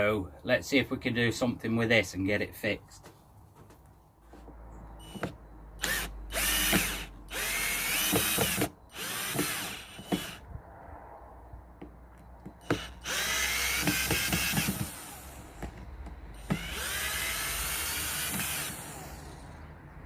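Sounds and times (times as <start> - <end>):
power drill whining: 5.0 - 10.4, 12.6 - 15.8, 16.4 - 19.6.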